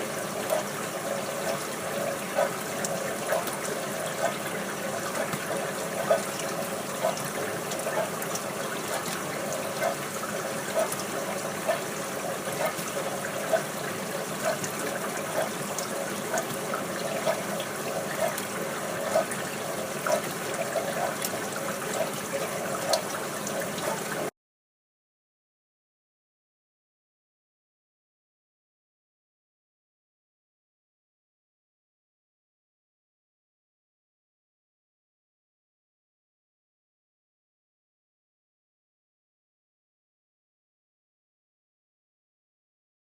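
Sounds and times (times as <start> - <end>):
dishwasher spraying water: 0.0 - 24.3.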